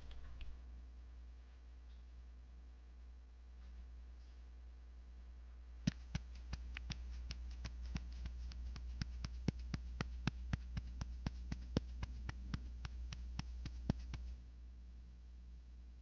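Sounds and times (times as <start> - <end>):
steady low hum: 0.0 - 16.0
fingers tapping on paper: 5.9 - 14.3.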